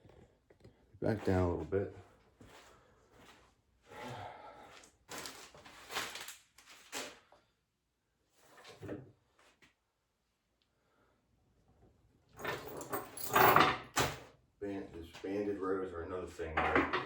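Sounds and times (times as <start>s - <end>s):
handling rustles scrapes and knocks: 5.1s - 7.3s.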